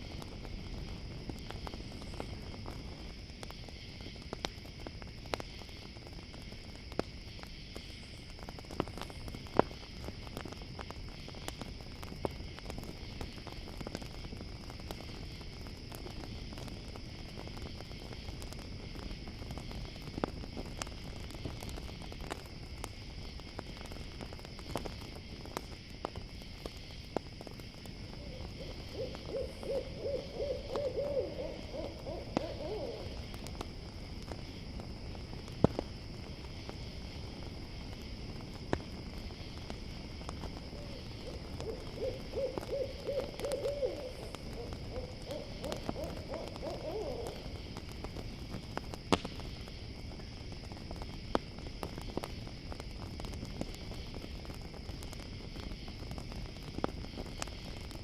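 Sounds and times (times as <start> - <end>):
campfire crackling and popping: 0.0 - 58.0
crickets chirring: 0.0 - 58.0
owl hooting: 28.2 - 33.2, 40.7 - 47.5.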